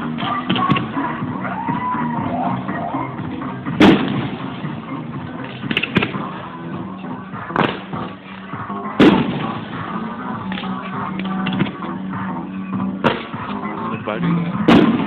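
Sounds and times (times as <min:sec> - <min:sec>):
background music: 0:00.0 - 0:15.0
fireworks exploding: 0:03.8 - 0:04.9, 0:09.0 - 0:10.0, 0:14.7 - 0:15.0.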